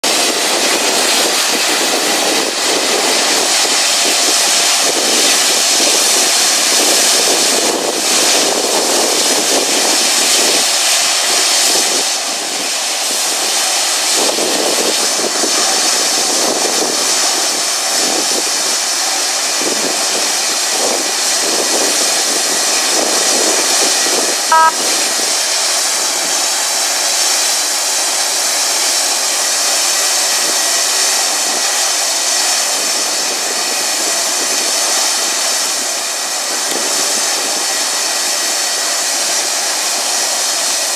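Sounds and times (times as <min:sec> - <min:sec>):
jet engine rushing hiss: 0:00.0 - 0:40.9
short electronic beep: 0:24.5 - 0:24.8.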